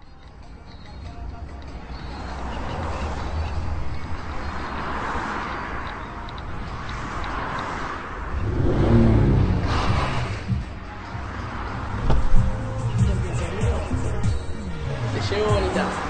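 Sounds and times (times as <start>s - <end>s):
car engine rumble: 1.5s - 16.0s
road hiss: 2.1s - 13.2s.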